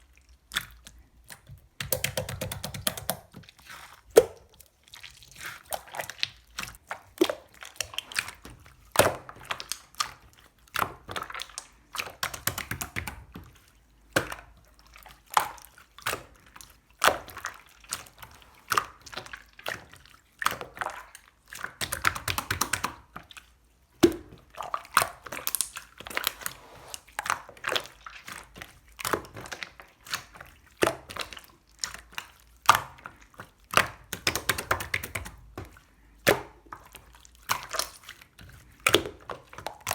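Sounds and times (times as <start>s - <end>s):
slime squished by hand: 24.0s - 39.9s.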